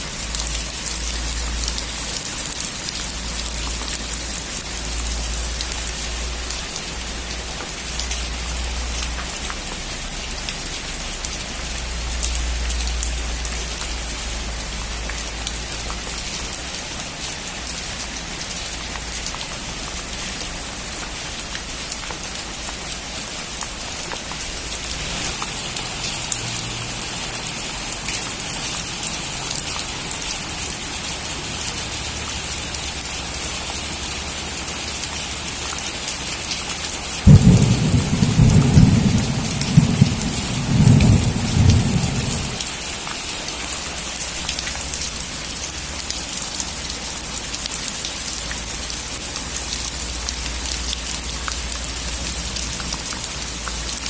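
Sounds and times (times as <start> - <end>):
heavy rain on a metal roof: 0.0 - 54.0.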